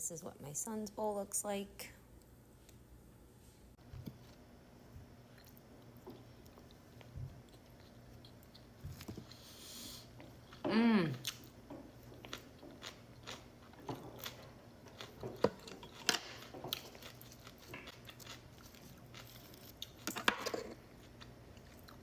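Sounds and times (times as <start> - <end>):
person crunching and chewing: 5.3 - 9.4, 10.1 - 22.0.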